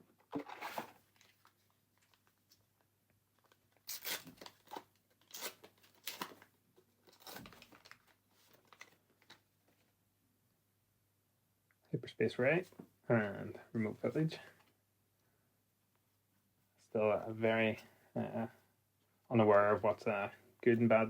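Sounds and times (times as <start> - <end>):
foil wrapper tearing and crinkling: 3.8 - 6.4, 7.1 - 9.0.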